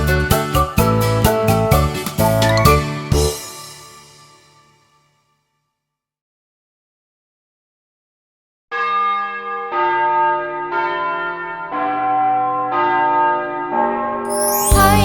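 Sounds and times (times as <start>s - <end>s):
church bells striking: 8.7s - 14.3s.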